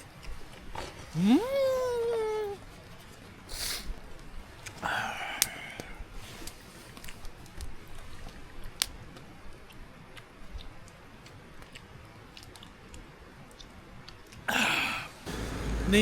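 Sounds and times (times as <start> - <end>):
person chewing food: 4.6 - 14.8.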